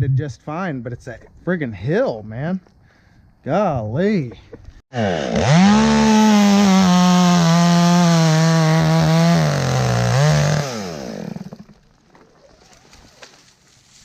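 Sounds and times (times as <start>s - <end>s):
chainsaw cutting through a limb: 4.9s - 11.8s.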